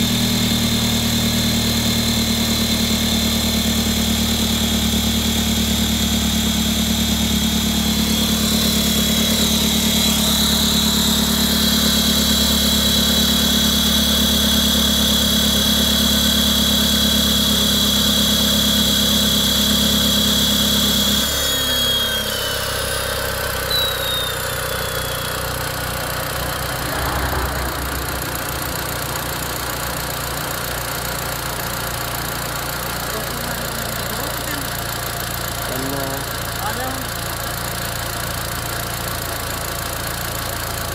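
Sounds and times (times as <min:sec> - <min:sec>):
car engine idling: 0:00.0 - 0:40.9
high-pitched engine screech: 0:07.7 - 0:14.3, 0:20.1 - 0:30.9
faint short squeaks: 0:23.7 - 0:25.3.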